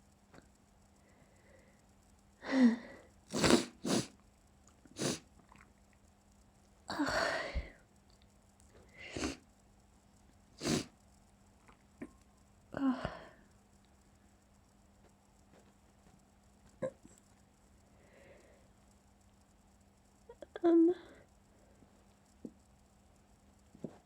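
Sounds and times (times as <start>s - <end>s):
person sneezing: 3.3s - 4.1s, 5.0s - 5.2s, 10.6s - 10.9s.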